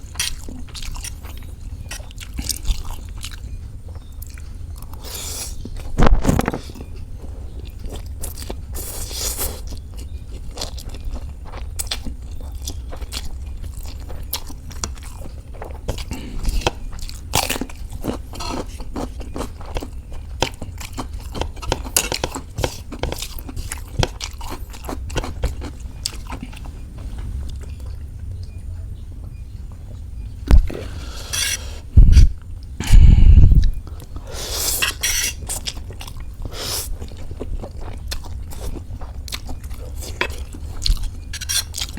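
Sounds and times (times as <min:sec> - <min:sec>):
person chewing noodles: 0:00.0 - 0:28.1, 0:30.5 - 0:41.9
steady low hum: 0:00.0 - 0:41.9.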